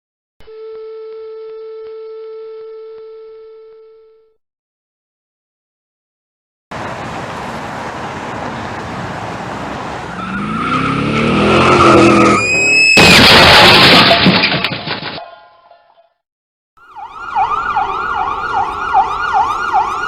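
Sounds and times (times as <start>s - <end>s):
tires screeching: 6.7s - 13.8s
car engine revving: 6.8s - 12.5s
loud crash impact: 12.9s - 15.2s
debris clattering: 13.0s - 15.4s.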